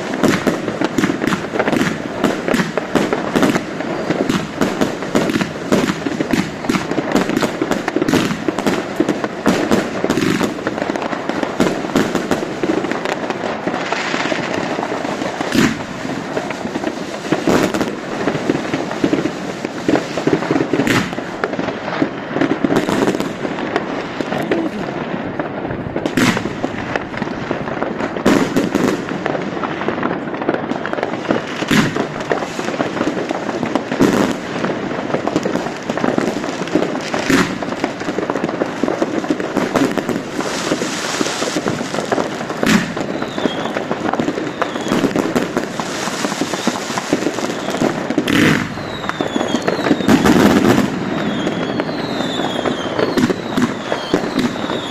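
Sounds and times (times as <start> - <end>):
fireworks bangs: 0.0 - 54.9
fireworks crackling: 0.0 - 54.9
fireworks whistles: 0.0 - 54.9.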